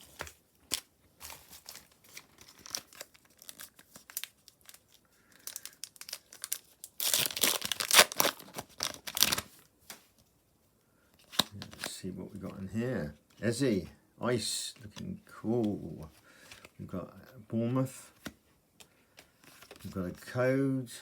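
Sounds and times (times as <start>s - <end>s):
foil wrapper crinkling: 0.0s - 9.6s
foil wrapper tearing open: 1.6s - 9.5s.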